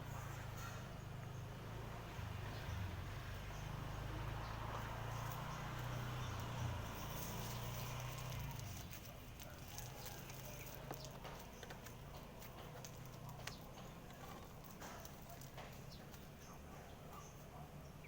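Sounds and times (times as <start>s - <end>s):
birds pecking taps and clicks: 7.5s - 16.5s.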